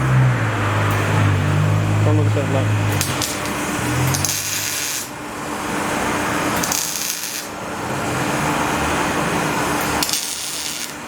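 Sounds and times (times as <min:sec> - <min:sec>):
welding arc crackling: 0:02.8 - 0:11.0.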